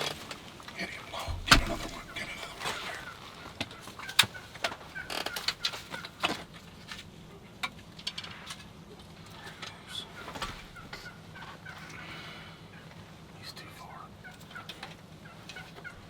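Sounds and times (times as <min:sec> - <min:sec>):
turkeys clucking and putting: 0:00.0 - 0:16.0
sharp clicks and knocks: 0:01.3 - 0:02.2.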